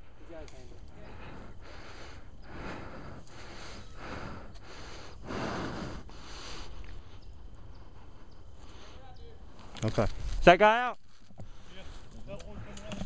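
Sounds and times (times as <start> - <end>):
person breathing hard: 0.9 - 9.1.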